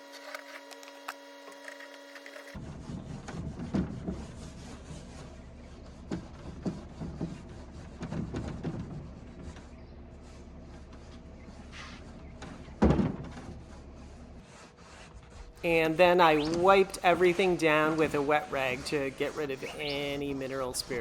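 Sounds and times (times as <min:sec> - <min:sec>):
knocks and scrapes on wood: 0:02.6 - 0:15.6.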